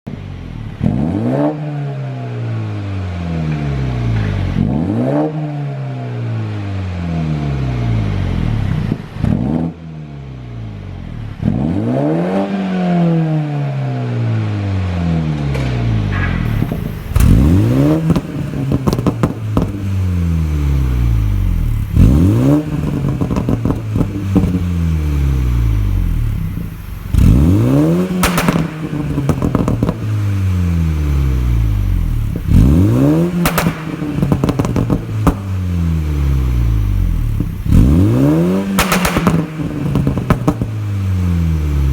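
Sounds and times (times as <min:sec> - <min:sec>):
car engine revving: 0:00.4 - 0:41.9
exhaust pops and crackles: 0:15.5 - 0:41.9.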